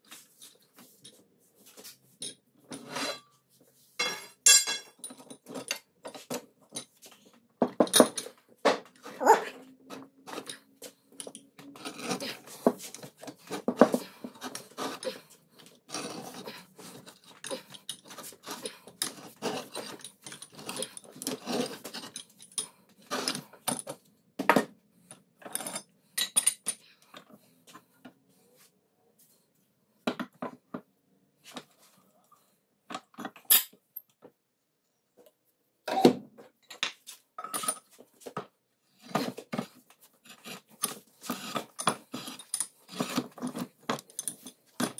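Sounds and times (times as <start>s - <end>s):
metal tools clinking and scraping: 1.8s - 3.4s, 4.0s - 7.2s, 9.2s - 24.0s, 25.1s - 27.4s, 36.7s - 38.0s, 39.2s - 44.9s.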